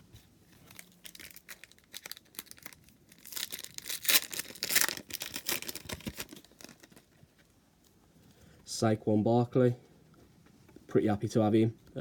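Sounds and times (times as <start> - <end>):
foil pack tearing and crinkling: 0.7 - 7.1.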